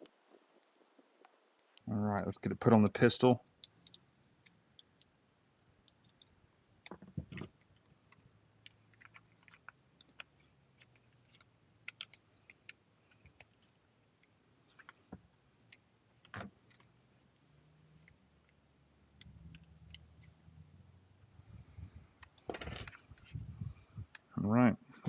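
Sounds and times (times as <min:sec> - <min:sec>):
clicks and taps of small parts: 0:00.0 - 0:02.3, 0:05.8 - 0:13.5.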